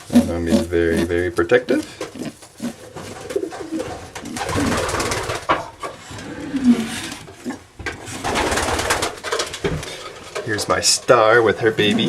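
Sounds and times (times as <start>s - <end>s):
pigeons cooing: 1.8s - 9.2s, 11.6s - 12.0s.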